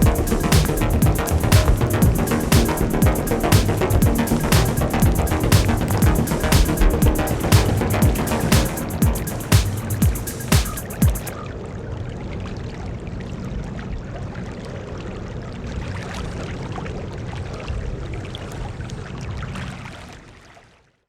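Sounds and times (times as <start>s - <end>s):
low rumble: 0.0s - 11.0s
raindrop ticks: 0.0s - 11.3s.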